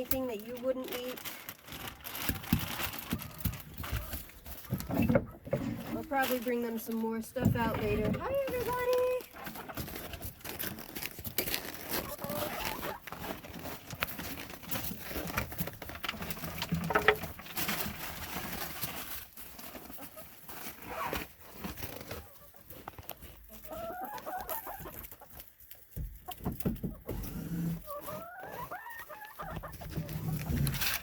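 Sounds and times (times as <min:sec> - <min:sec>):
hens clucking: 0:02.3 - 0:10.9, 0:11.8 - 0:18.7, 0:19.6 - 0:21.2, 0:22.1 - 0:31.0.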